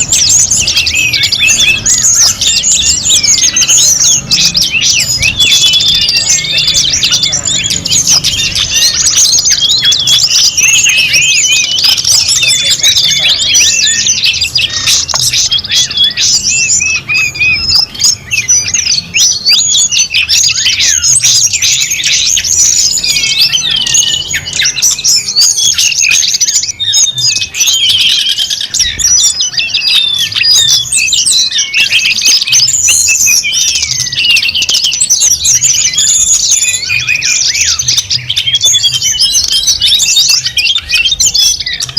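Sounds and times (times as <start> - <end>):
small birds chirping and twittering: 0.0 - 41.9.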